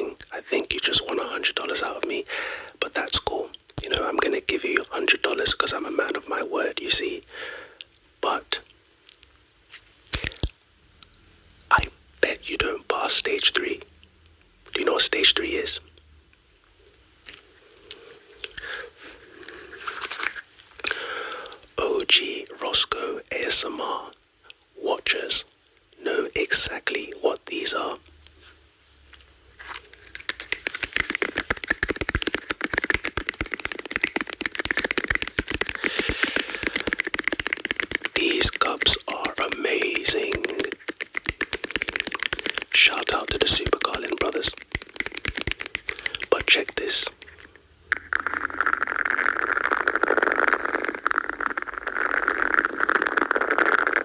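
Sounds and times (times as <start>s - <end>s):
rapid tapping on cups: 29.8s - 53.8s.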